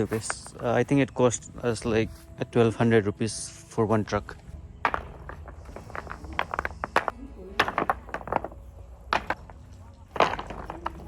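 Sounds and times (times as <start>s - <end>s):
stones knocking together: 0.0s - 0.8s, 4.7s - 11.0s.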